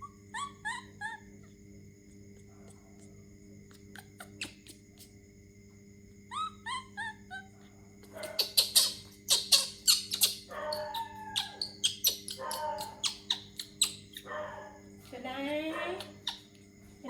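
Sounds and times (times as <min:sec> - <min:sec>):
baby monkey squeaking: 0:00.0 - 0:01.3, 0:03.7 - 0:05.1, 0:06.3 - 0:14.3, 0:15.8 - 0:16.6.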